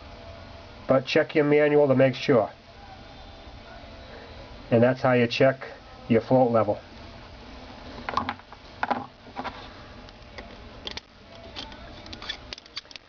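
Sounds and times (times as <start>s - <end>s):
small parts clicking and knocking: 10.8s - 13.0s.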